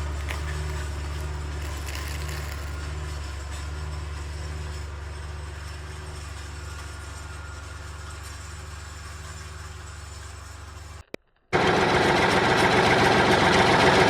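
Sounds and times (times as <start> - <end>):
small electric motor humming: 0.0 - 11.0.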